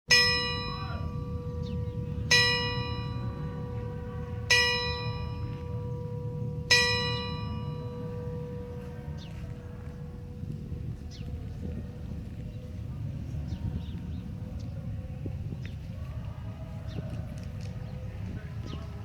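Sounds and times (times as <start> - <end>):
church bell tolling: 0.1 - 13.3
low steady rumble: 0.1 - 19.0.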